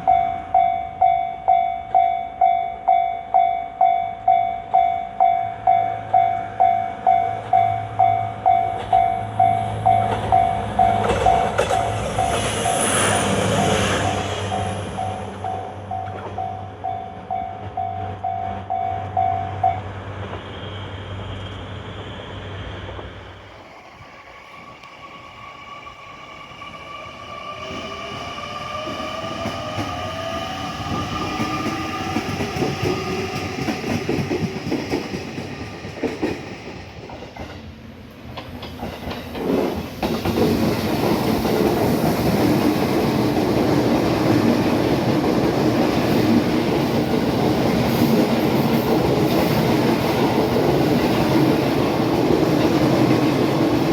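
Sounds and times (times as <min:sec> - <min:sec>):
level-crossing bell ringing: 0:00.0 - 0:12.8, 0:13.6 - 0:19.8
railcar passing with rising whine: 0:00.0 - 0:53.9
train wheel clatter: 0:09.7 - 0:16.6, 0:28.8 - 0:37.7, 0:38.3 - 0:53.9.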